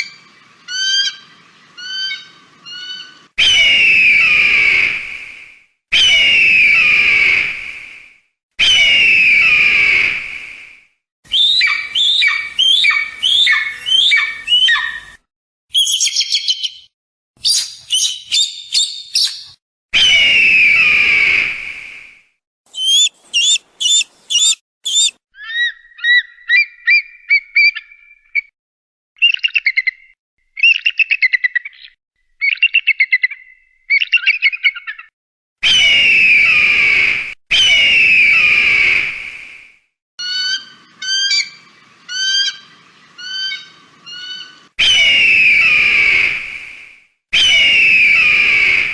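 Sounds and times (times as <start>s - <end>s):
eagle screaming: 8.6s - 10.1s, 22.7s - 25.6s
falling whistled bird notes: 11.3s - 19.4s, 22.7s - 25.2s, 43.2s - 46.4s
fast chattering bird calls: 22.7s - 26.2s
high-pitched bird pips: 22.7s - 28.5s.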